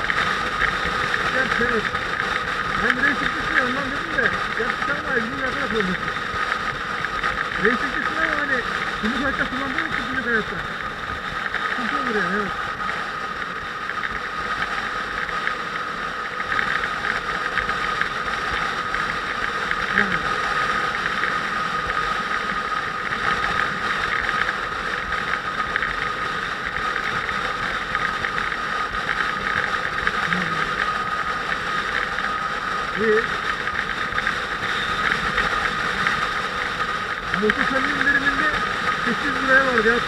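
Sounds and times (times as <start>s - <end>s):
motorcycle engine running: 0.0s - 40.0s.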